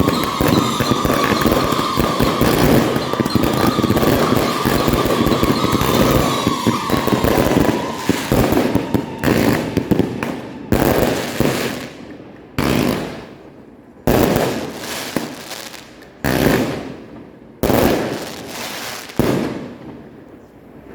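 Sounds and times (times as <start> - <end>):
faint falling whistle: 0.0 - 11.4
firework shell bangs: 0.0 - 11.9
fireworks crackling barrage: 0.0 - 20.1.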